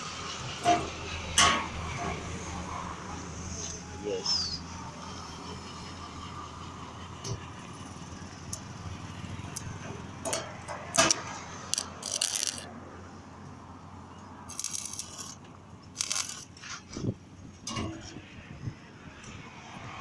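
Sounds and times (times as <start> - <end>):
welding arc crackling and sizzling: 10.9 - 12.7, 14.5 - 16.7.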